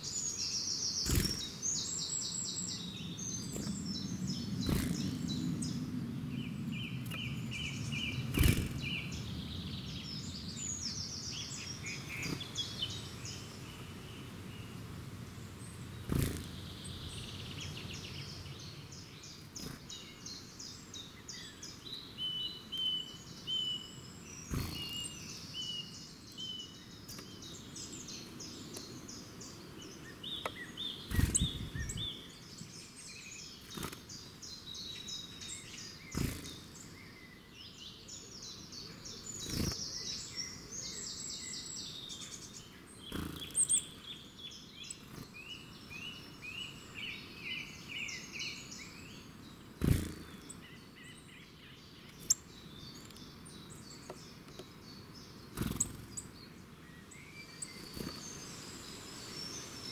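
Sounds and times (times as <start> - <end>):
songbirds singing: 0.0 - 59.9
sharp thumps: 8.3 - 8.8.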